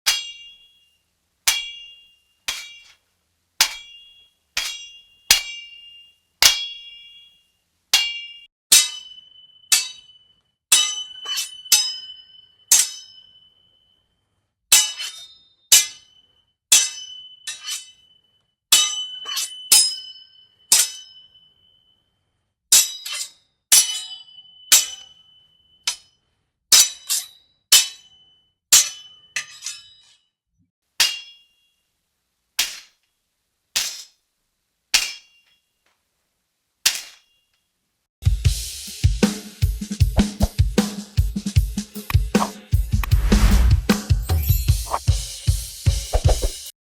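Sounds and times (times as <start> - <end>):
steel swords clashing: 0.1 - 0.8, 1.5 - 3.0, 3.6 - 7.1, 8.0 - 13.2, 16.7 - 18.1, 18.8 - 21.2, 26.8 - 28.2, 28.8 - 30.2, 31.0 - 31.6, 32.6 - 33.0, 33.8 - 34.2, 35.0 - 35.6, 36.9 - 37.3.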